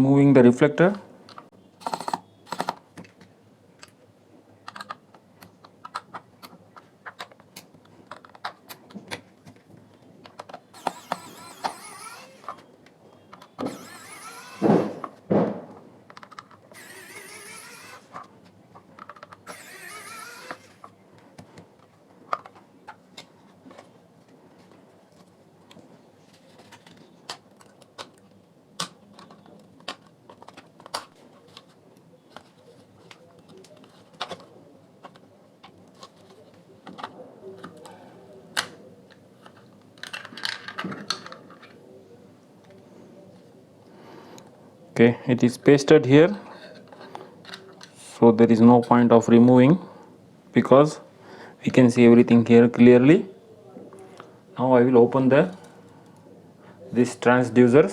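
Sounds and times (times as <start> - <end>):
plastic parts clicking and tapping: 4.6 - 12.6, 16.1 - 23.9, 24.6 - 41.8
plastic scraping: 10.3 - 12.7, 13.3 - 23.9.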